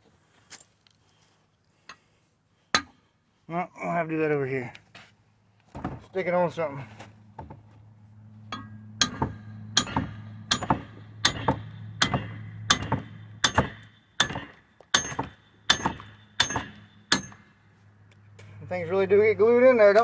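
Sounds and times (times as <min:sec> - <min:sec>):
steady low hum: 0:07.1 - 0:19.5
metal-on-metal blows ringing: 0:08.5 - 0:17.6.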